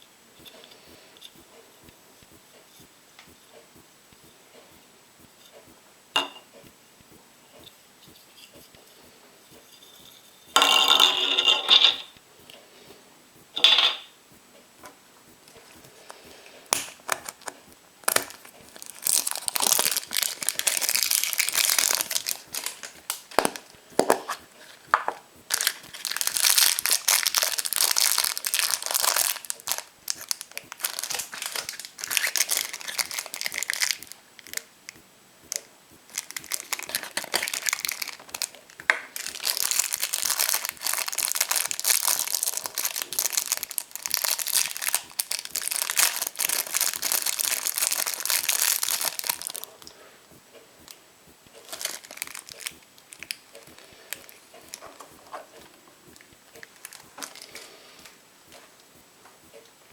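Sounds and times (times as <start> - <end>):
foil wrapper crinkling: 15.4 - 34.7, 35.5 - 49.9, 51.6 - 55.5, 56.1 - 57.7.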